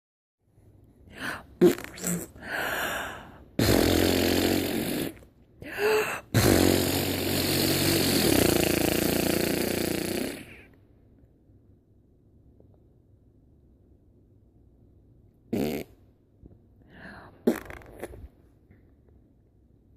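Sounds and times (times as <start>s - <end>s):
person making rough buzzing noises: 1.2s - 10.7s, 15.5s - 16.0s, 17.3s - 18.3s.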